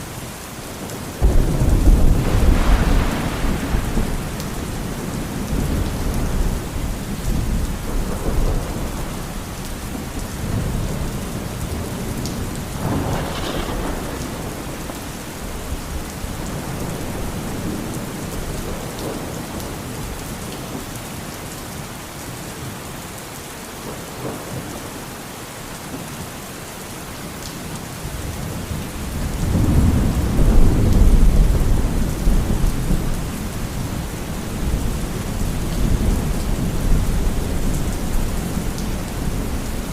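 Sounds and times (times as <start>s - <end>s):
steady rain: 0.0s - 39.9s
thunder crack: 1.2s - 6.6s, 12.8s - 15.1s
rolling thunder: 1.2s - 19.8s, 28.7s - 39.9s.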